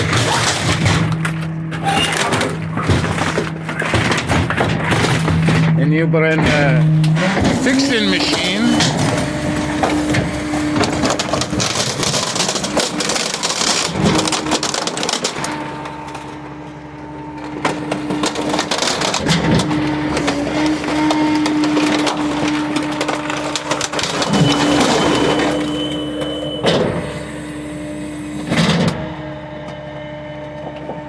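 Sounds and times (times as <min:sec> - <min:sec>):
dishwasher cracking and crunching: 0:00.0 - 0:16.4, 0:17.4 - 0:25.8
machine humming: 0:00.0 - 0:28.5.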